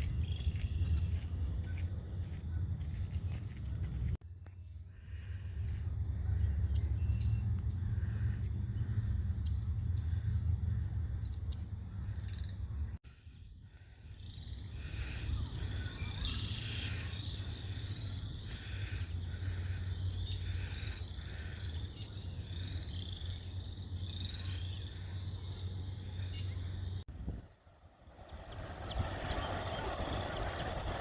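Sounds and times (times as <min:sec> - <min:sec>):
low steady rumble: 0:00.0 - 0:31.0
birds chirping and calling: 0:28.2 - 0:31.0.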